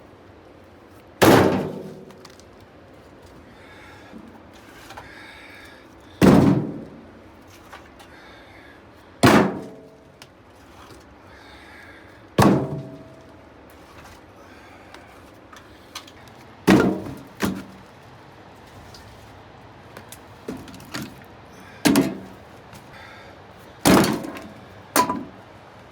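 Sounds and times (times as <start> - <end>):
firewood thunking onto pile: 1.2 - 2.4, 6.2 - 7.9, 9.2 - 10.0, 12.4 - 14.2, 16.7 - 17.8, 20.0 - 21.2, 21.8 - 22.9, 23.8 - 25.4.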